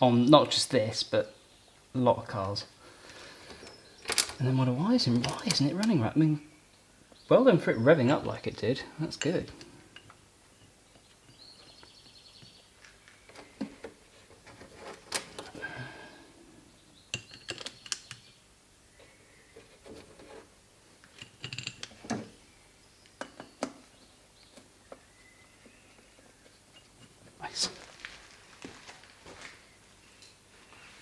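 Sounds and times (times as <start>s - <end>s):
metallic clicks and clinks of tools: 21.1s - 22.0s.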